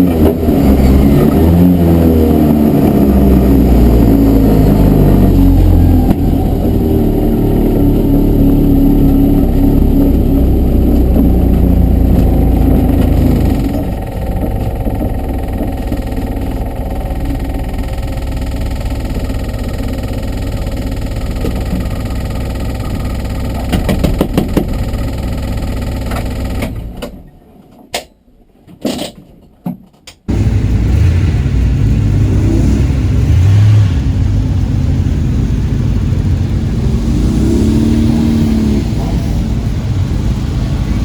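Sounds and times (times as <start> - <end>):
car engine running: 0.0 - 27.0, 30.3 - 41.0
knocks: 23.6 - 24.8.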